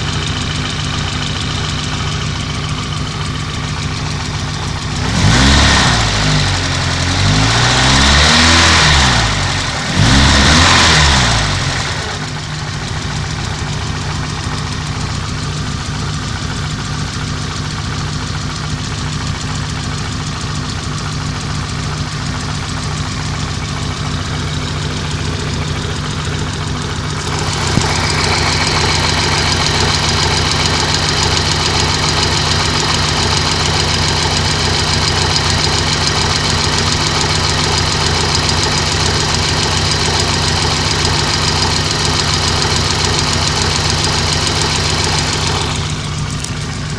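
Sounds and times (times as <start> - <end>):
car engine revving and idling: 0.0 - 46.9
dull engine knock: 12.3 - 46.9.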